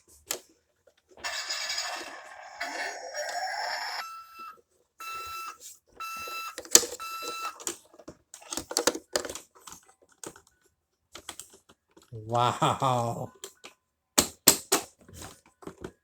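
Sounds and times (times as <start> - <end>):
toy reversing alarm beeps: 1.3 - 7.6
plastic toy clicks and knocks: 6.5 - 10.5, 13.4 - 14.9.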